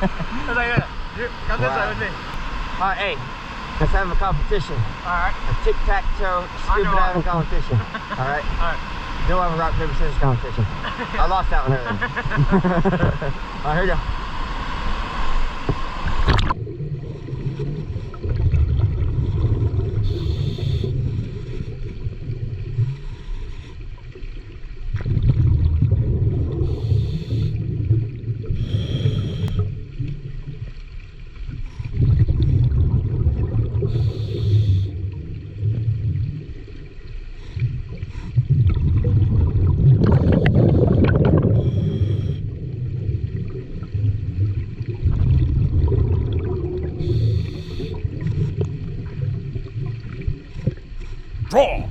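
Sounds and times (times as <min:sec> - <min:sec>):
exhaled bubbles rumbling underwater: 0:00.0 - 0:51.5
scuba regulator hissing: 0:20.0 - 0:20.9, 0:26.7 - 0:27.6, 0:28.6 - 0:29.6, 0:33.9 - 0:34.9, 0:47.0 - 0:48.0.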